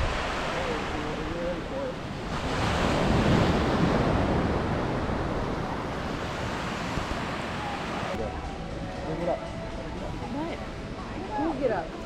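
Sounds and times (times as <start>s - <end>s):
wind gusting across microphone: 0.0s - 8.3s.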